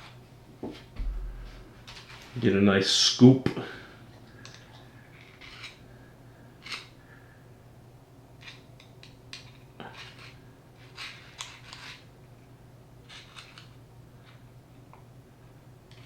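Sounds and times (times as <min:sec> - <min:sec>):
steady low hum: 0:00.0 - 0:11.3
small parts clicking and scraping: 0:04.2 - 0:05.8, 0:06.6 - 0:07.0, 0:08.4 - 0:12.1, 0:13.0 - 0:14.4.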